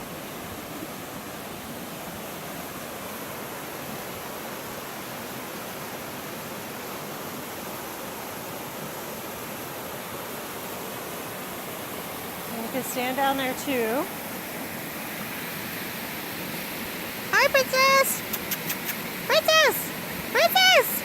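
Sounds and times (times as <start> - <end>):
waterfall rushing: 19.0 - 21.0.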